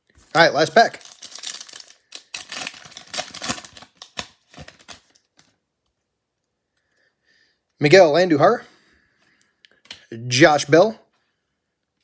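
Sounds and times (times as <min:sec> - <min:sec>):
wrapper crinkling and tearing: 0:00.2 - 0:05.5
cards being handled: 0:01.0 - 0:05.6.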